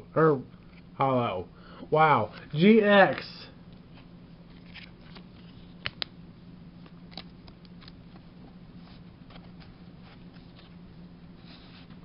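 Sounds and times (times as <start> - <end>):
cards clicking and tapping: 5.8 - 6.1.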